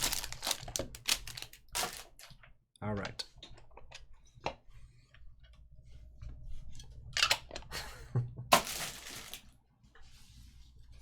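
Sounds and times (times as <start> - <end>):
card packs clicking and knocking: 0.0 - 2.3, 8.5 - 9.4
wrapper crinkling: 0.0 - 2.3, 8.5 - 9.5.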